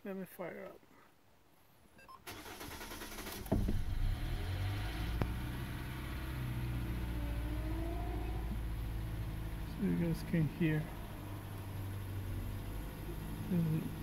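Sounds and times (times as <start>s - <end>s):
engine starter cranking: 2.2s - 5.3s
car engine idling: 2.3s - 14.0s
faint whine: 5.1s - 14.0s.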